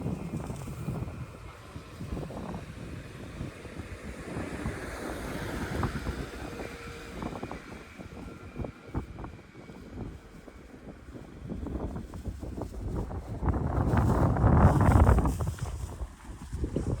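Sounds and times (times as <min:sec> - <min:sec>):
street traffic: 0:00.0 - 0:09.3
wind buffeting microphone: 0:00.0 - 0:17.0.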